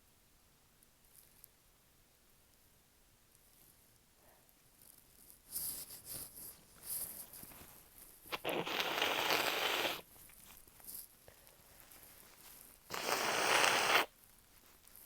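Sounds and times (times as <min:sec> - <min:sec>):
person blowing nose: 0:08.3 - 0:10.0, 0:12.9 - 0:14.1.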